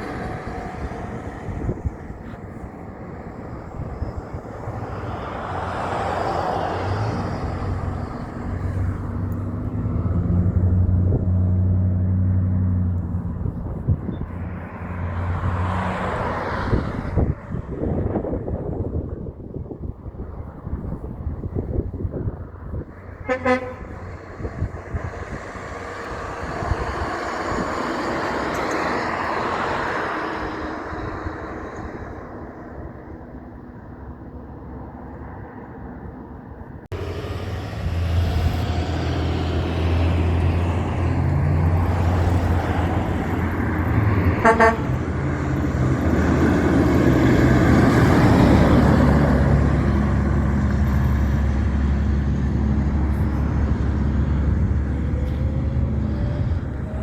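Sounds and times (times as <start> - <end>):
heavy trucks driving past: 0.0 - 57.0
truck horn: 23.1 - 24.6, 44.2 - 45.3.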